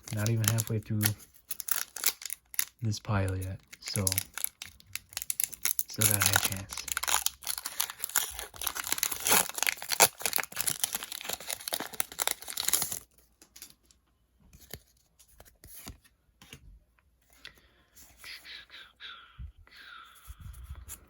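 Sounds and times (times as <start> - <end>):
foil wrapper crinkling and tearing: 0.0 - 13.2.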